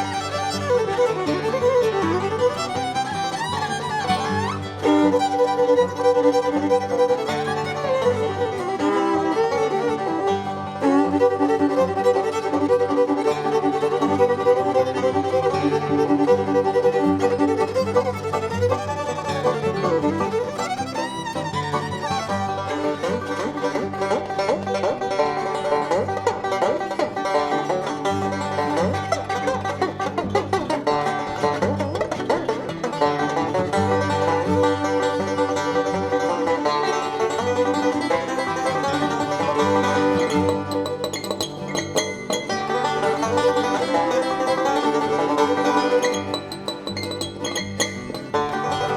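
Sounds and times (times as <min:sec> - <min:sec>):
banjo: 0:00.0 - 0:48.9
bluegrass band playing: 0:00.0 - 0:48.9
fiddle: 0:00.0 - 0:48.9.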